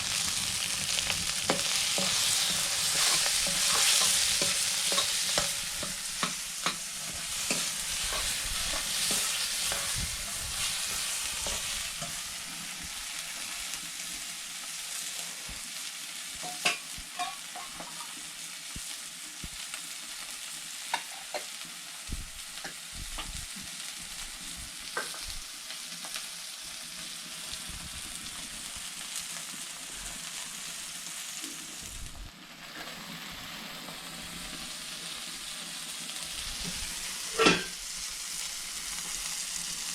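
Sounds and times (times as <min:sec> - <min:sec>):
curry sizzling in a pan: 0:00.0 - 0:39.9
spoon stirring and scraping: 0:01.4 - 0:12.3, 0:16.4 - 0:18.1.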